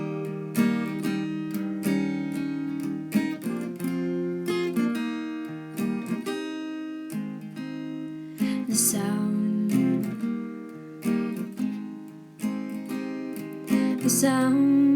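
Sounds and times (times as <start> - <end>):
acoustic guitar strumming: 0.0 - 14.9
person singing: 8.4 - 10.2, 13.7 - 14.9.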